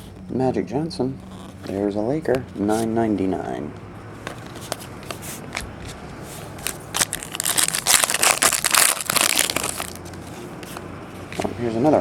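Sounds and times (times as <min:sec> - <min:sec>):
card pack wrapper crinkling: 0:06.6 - 0:10.2.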